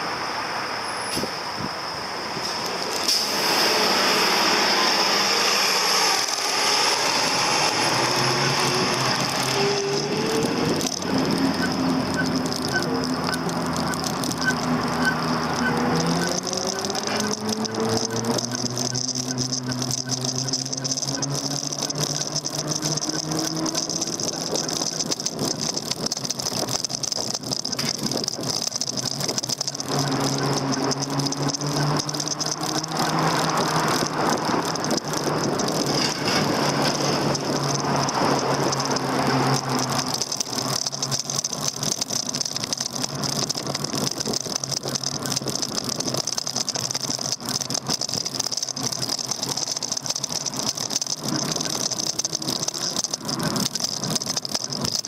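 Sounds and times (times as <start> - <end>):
road and wind noise: 0.0 - 55.0
bike and mounts rattling: 2.4 - 55.0
electric motor humming and whining: 2.9 - 25.8.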